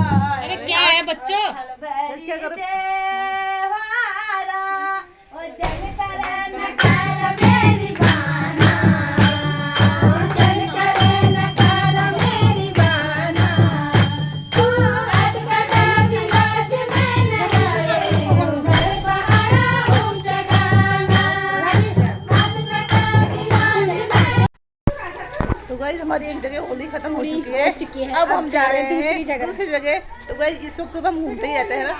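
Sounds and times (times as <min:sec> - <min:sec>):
percussion beat: 0:00.0 - 0:01.1, 0:05.6 - 0:24.5
folk singing: 0:01.6 - 0:24.5
deep drum thumps: 0:06.8 - 0:24.5.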